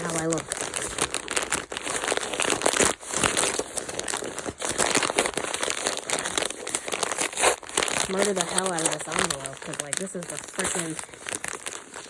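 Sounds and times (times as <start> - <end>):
envelope crinkling: 0.0 - 12.0.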